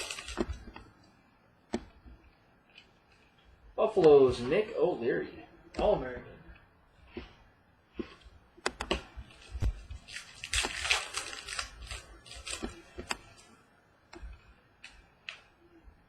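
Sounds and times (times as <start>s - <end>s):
foil wrapper crinkling and tearing: 0.0s - 0.6s, 9.3s - 13.5s.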